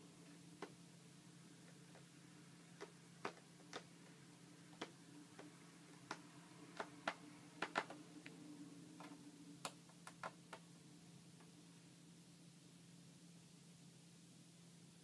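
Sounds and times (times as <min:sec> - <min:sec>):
faint steady hum: 0:00.0 - 0:15.0
small sharp clicks and taps: 0:02.8 - 0:03.9, 0:09.0 - 0:10.6.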